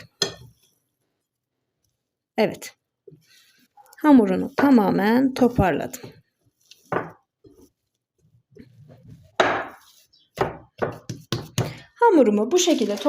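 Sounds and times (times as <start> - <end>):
dough knocking on work surface: 9.4 - 11.8.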